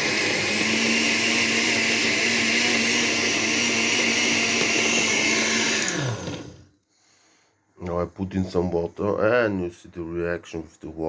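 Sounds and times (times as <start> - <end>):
blender chopping twigs: 0.0 - 6.7.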